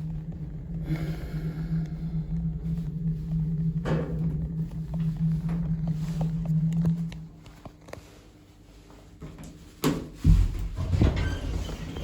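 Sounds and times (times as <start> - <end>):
lift drive humming: 0.0 - 7.5.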